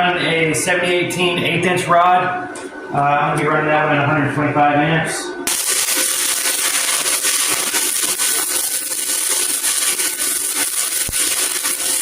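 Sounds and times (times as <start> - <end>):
welding arc crackling: 5.5 - 12.0.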